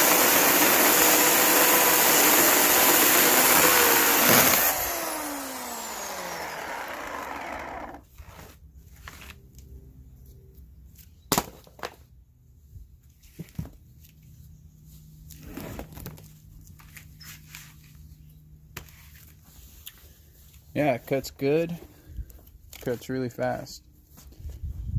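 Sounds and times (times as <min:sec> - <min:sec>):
electric chainsaw winding down: 0:00.0 - 0:08.0.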